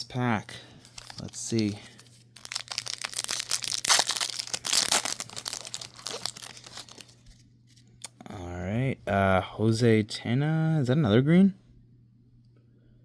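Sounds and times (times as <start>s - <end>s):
plastic wrapper crinkling: 0.8s - 7.4s.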